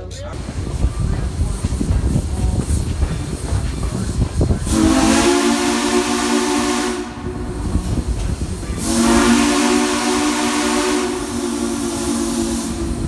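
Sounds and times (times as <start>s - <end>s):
steam hiss: 0.0s - 13.0s
steam locomotive whistle: 4.6s - 13.0s
low rumble: 7.0s - 9.6s.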